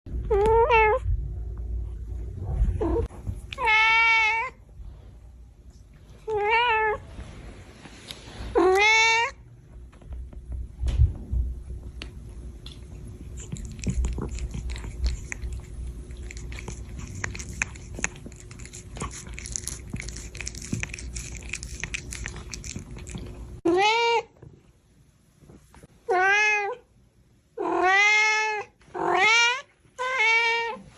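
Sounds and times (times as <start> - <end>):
cat meowing: 2.9 - 4.6.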